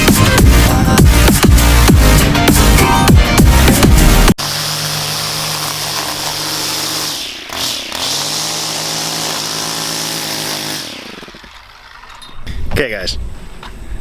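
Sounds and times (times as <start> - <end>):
string trimmer engine revving: 4.4 - 12.3.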